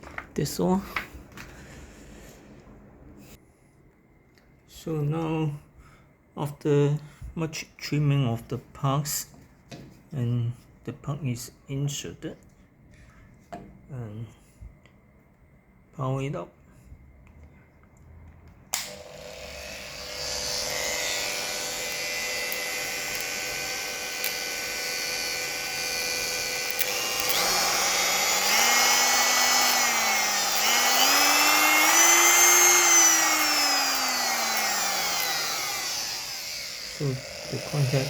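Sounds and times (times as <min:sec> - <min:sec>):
spindle motor whining: 0:18.8 - 0:38.0.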